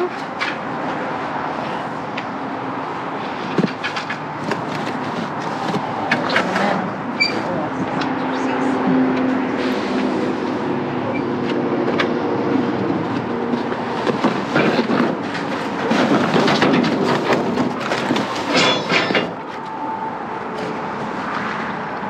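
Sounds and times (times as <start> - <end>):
objects rummaged in a dumpster: 3.3 - 7.5, 13.0 - 19.7.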